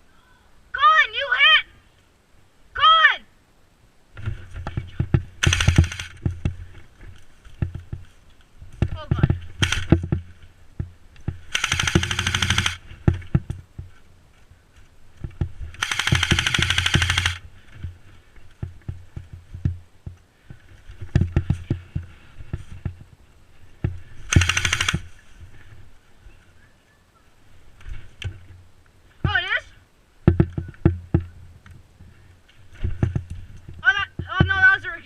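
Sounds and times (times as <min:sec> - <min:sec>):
airsoft rifle automatic fire: 0:05.4 - 0:06.2, 0:09.6 - 0:10.0, 0:11.5 - 0:12.8, 0:15.8 - 0:17.4, 0:24.3 - 0:25.1.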